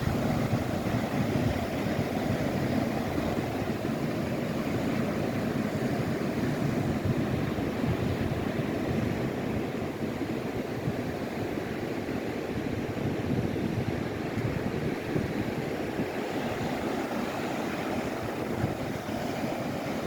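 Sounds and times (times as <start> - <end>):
ocean surf rushing: 0.0 - 20.0
wind buffeting microphone: 0.0 - 20.0.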